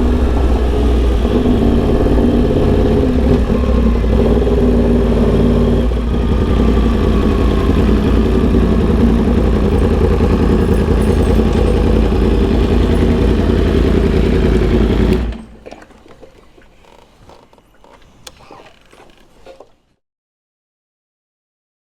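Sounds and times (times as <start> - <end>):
motorcycle engine idling: 0.0 - 15.6.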